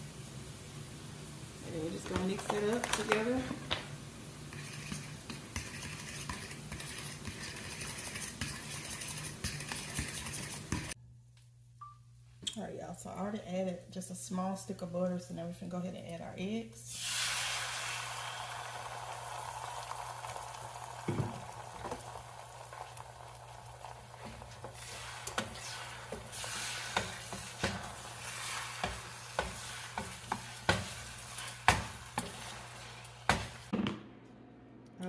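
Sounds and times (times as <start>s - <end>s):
eggs sizzling in butter: 0.0s - 11.0s, 16.8s - 33.7s
utensil scraping and tapping pan: 4.5s - 11.0s, 24.2s - 32.6s.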